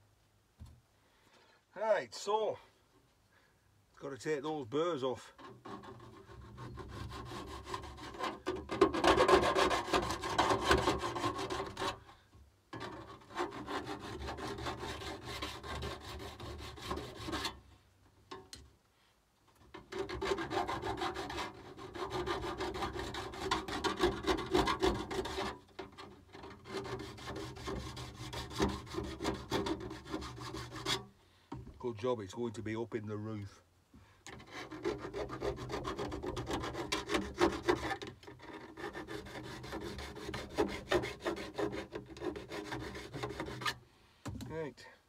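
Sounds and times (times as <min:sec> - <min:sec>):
hand file rasping on metal: 0:05.4 - 0:12.1, 0:12.8 - 0:17.6, 0:19.8 - 0:31.1, 0:34.3 - 0:43.8.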